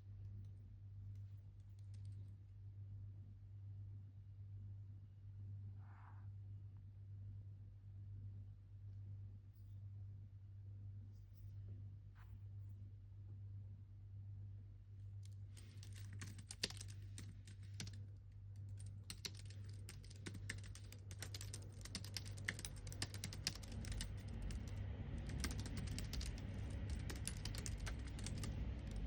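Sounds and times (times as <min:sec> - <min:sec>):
steady low hum: 0:00.0 - 0:29.0
keyboard typing clicks: 0:15.6 - 0:18.0, 0:18.7 - 0:29.0
low rumble: 0:19.5 - 0:29.0.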